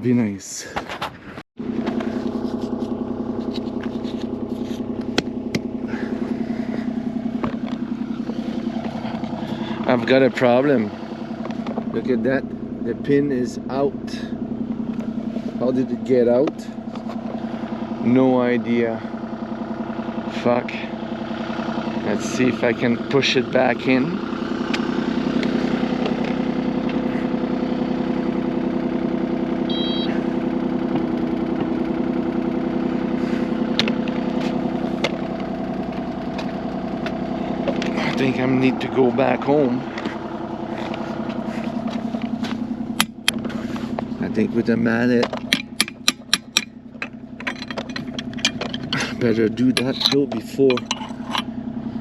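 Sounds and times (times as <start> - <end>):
excavator engine throbbing: 1.6 - 52.0
high electronic beep: 29.7 - 30.1.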